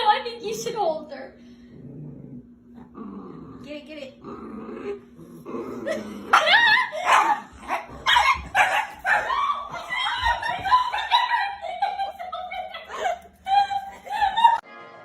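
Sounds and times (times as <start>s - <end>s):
dog yipping and barking: 6.3s - 9.6s.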